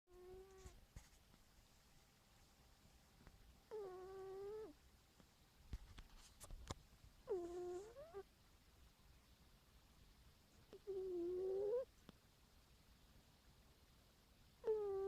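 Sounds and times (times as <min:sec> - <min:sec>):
cat snoring with squeaky tone: 0:03.7 - 0:04.8, 0:07.3 - 0:08.2, 0:10.7 - 0:11.9, 0:14.6 - 0:15.0.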